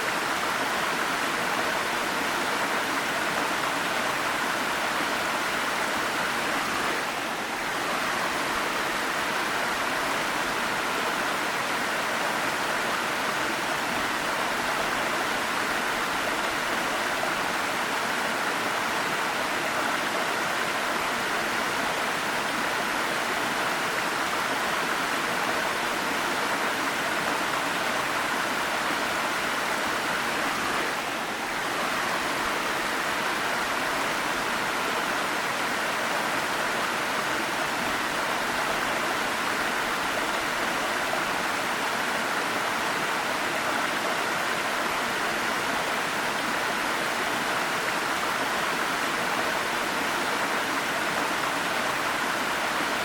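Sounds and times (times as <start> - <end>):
waterfall rushing: 0.0 - 53.0.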